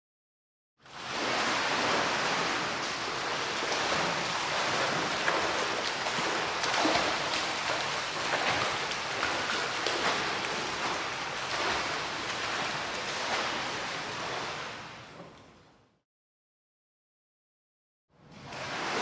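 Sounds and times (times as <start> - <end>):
rushing splashing water: 1.0 - 15.1.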